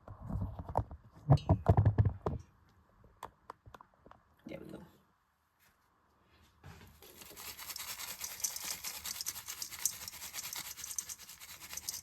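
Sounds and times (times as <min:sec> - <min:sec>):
packaging rustling shake: 0:07.0 - 0:12.0.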